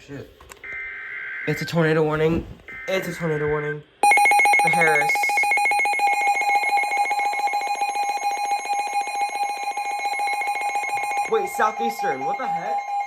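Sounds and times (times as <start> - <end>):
two-pitch alert tone: 8.9 - 13.0.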